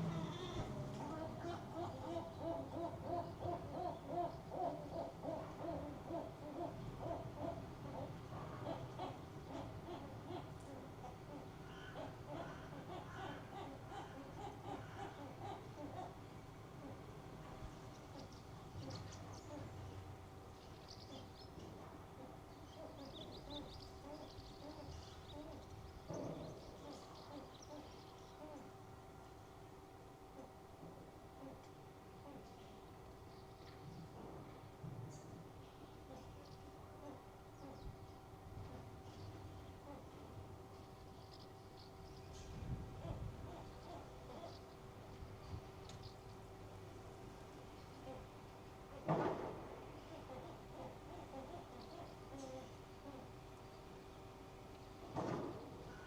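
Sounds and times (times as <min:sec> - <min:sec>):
gull hooting calls: 0:00.0 - 0:17.1
steady low hum: 0:00.0 - 0:56.0.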